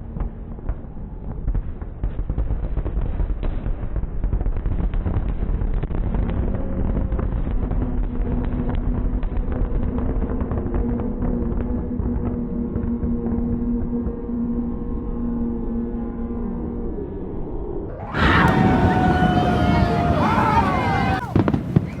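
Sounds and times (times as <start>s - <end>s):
firework cracks and pops: 0.0s - 13.6s, 18.1s - 22.0s
low rumble of firework booms: 0.0s - 15.8s, 18.1s - 22.0s.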